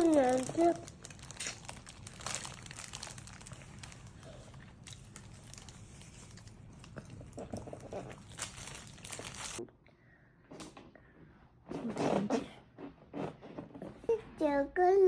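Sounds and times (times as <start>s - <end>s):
child crunching food: 0.0s - 9.6s
plastic packaging crinkling: 0.0s - 9.6s.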